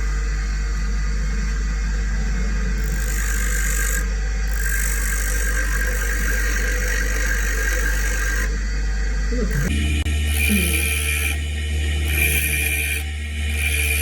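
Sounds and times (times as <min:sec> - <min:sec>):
grinding wheel humming: 0:00.0 - 0:14.0
harsh grinding hiss: 0:09.5 - 0:14.0.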